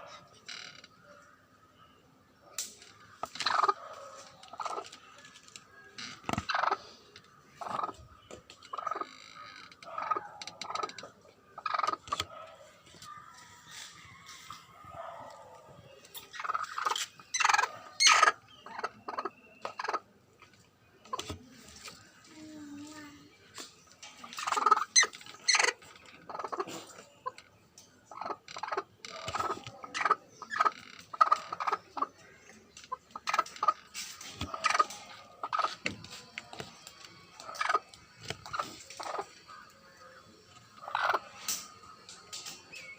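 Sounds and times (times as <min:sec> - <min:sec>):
hen clucking: 0:03.2 - 0:05.1, 0:06.1 - 0:09.2, 0:09.8 - 0:12.4, 0:15.2 - 0:20.1, 0:24.2 - 0:27.4, 0:28.1 - 0:36.2, 0:37.4 - 0:39.7, 0:40.6 - 0:41.7.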